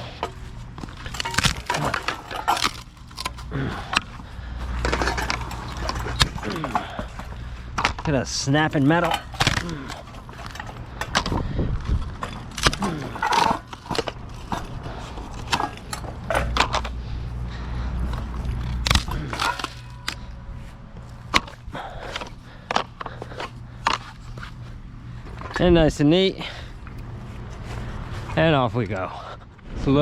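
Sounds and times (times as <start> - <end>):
scrap metal clanking: 0.0 - 25.7
steady low hum: 0.0 - 30.0.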